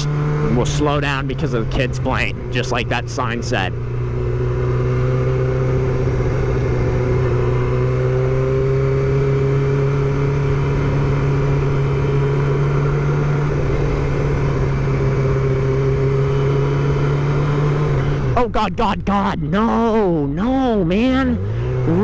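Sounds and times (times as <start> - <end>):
motorcycle engine running: 0.0 - 22.0
road noise: 0.0 - 22.0.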